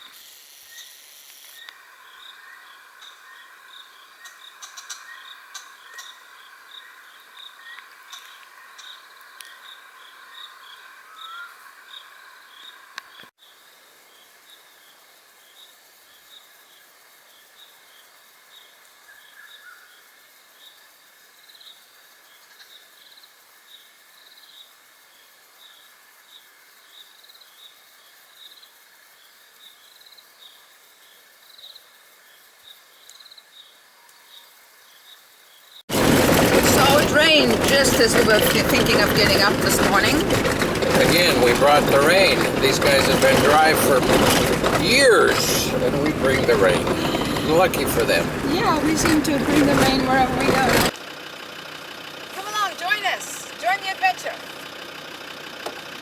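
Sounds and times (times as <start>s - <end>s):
dense low insect chorus: 0.0s - 35.8s
crickets chirping: 0.1s - 13.8s.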